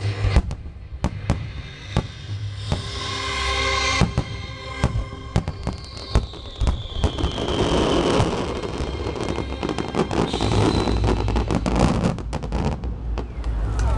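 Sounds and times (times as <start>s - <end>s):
fireworks bangs: 0.0s - 3.1s, 3.8s - 13.9s
fireworks crackling: 3.8s - 13.9s
whistling tone falling in pitch: 5.0s - 9.5s, 10.1s - 11.9s.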